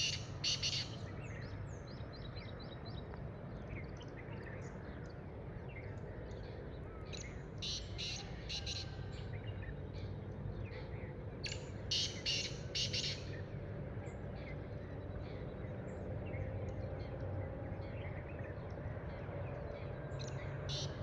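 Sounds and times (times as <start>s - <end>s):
small birds chirping: 0.0s - 13.5s.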